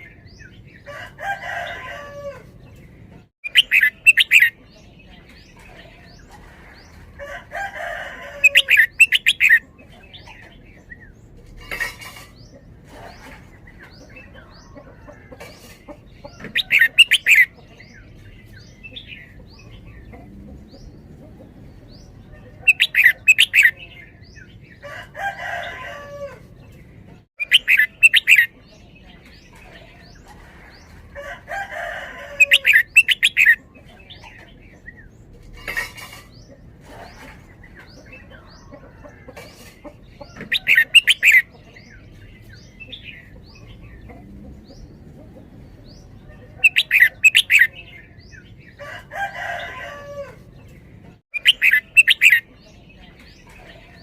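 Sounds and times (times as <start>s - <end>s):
bulbul singing: 3.4s - 6.2s, 7.8s - 12.5s, 15.6s - 24.8s, 27.4s - 30.2s, 32.3s - 35.1s, 39.6s - 44.2s, 45.9s - 48.8s, 51.3s - 54.0s.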